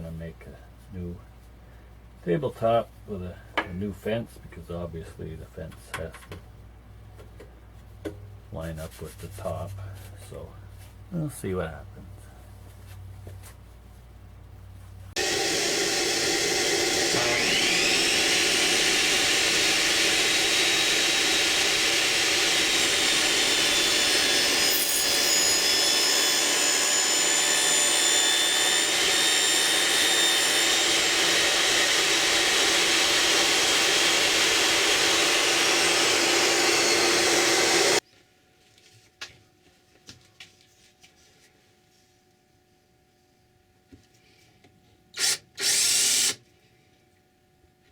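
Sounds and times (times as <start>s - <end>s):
power tool motor whine: 15.2s - 38.0s, 45.2s - 46.4s.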